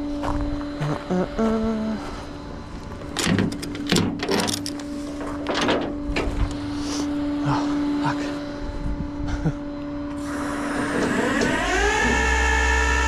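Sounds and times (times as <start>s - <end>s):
clanking or hissing bursts: 10.2s - 12.5s.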